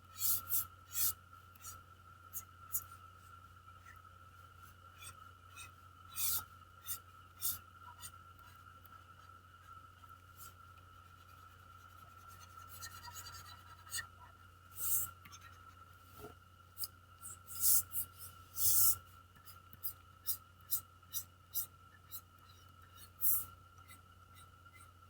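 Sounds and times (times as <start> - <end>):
faint electrical hum: 0.0 - 25.0
pen scratching on surface: 12.2 - 14.0.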